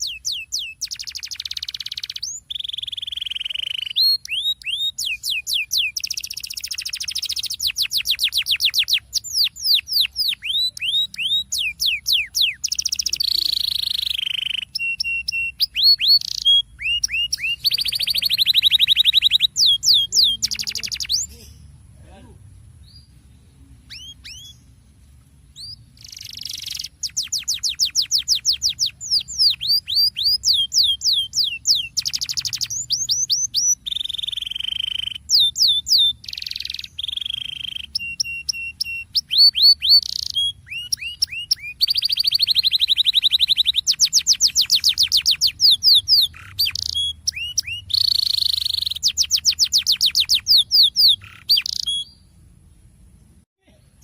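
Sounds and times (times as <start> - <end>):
canary singing: 0.0 - 21.8, 22.6 - 52.3.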